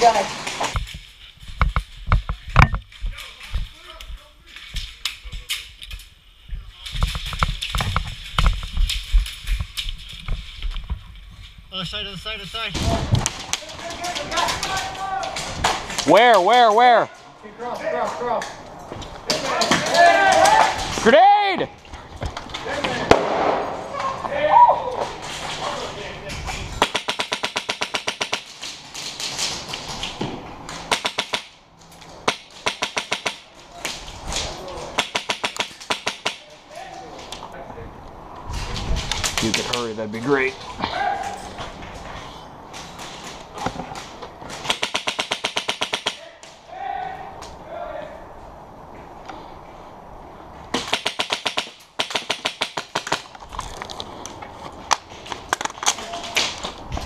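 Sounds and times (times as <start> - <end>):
airsoft gun firing: 23.1 - 23.8, 26.8 - 28.5, 30.8 - 31.5, 32.2 - 33.4, 35.0 - 36.4, 44.6 - 46.2, 50.7 - 53.2.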